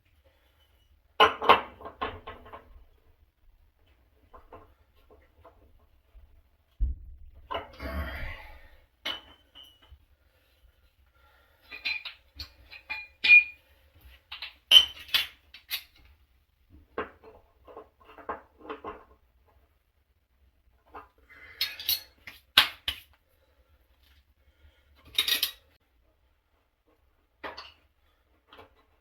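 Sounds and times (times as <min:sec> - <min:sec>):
tools and metal parts clinking: 0:11.6 - 0:13.6, 0:14.3 - 0:16.0, 0:21.6 - 0:23.0, 0:25.0 - 0:25.7.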